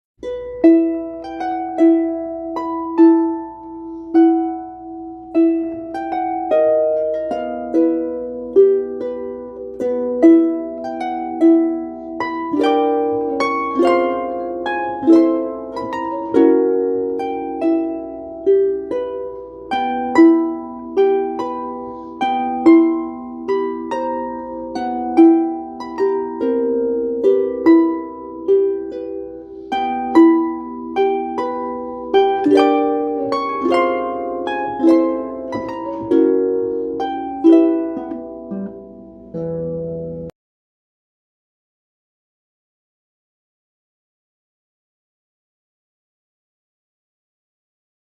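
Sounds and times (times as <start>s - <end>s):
plucked harp melody: 0.2s - 40.3s.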